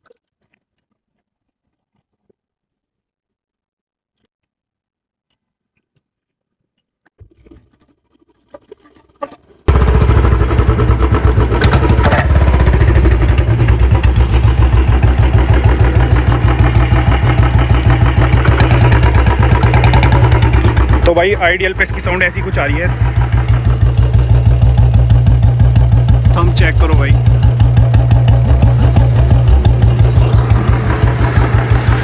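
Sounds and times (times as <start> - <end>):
motorcycle engine thumping idle: 9.7 - 32.0.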